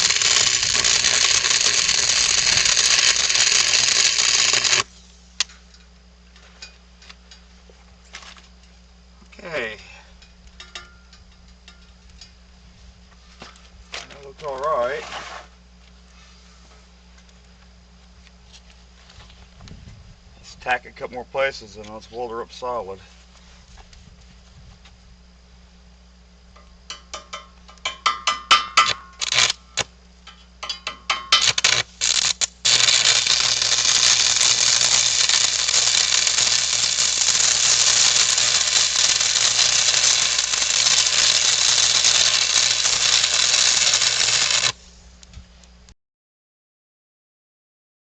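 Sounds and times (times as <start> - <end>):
electric arc welding: 0.0 - 4.9, 28.5 - 29.9, 31.3 - 44.8.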